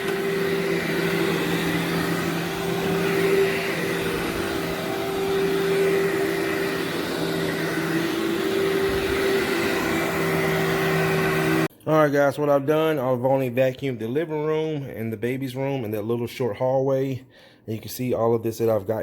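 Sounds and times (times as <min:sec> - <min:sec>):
vacuum cleaner running on carpet: 0:00.0 - 0:11.7.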